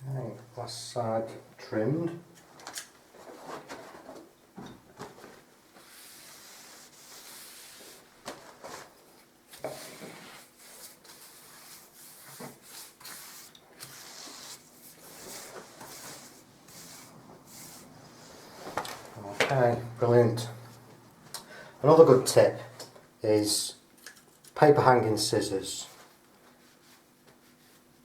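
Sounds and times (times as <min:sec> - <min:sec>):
wet wallpaper rubbing and rustling: 0:05.2 - 0:19.2.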